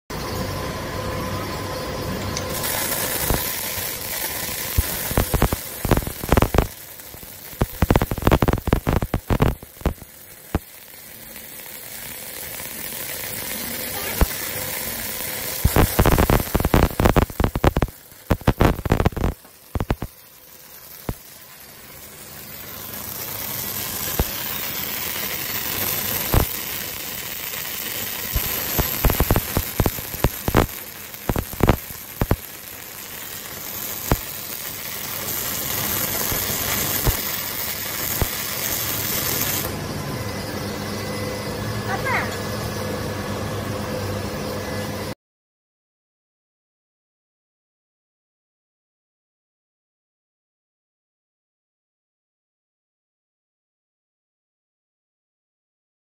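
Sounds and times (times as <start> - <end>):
welding arc crackling and sizzling: 0.1 - 43.2.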